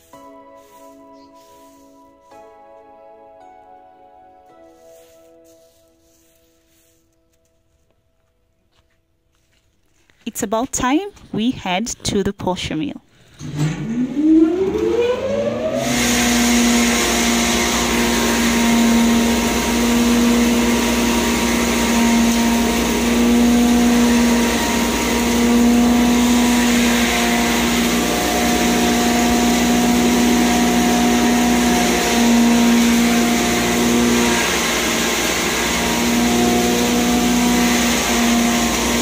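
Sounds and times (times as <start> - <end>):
loud rushing of grinding grain: 0.0 - 2.6, 4.6 - 7.4, 14.0 - 39.0
grinding mill humming: 0.0 - 3.8, 4.4 - 8.3, 13.3 - 39.0.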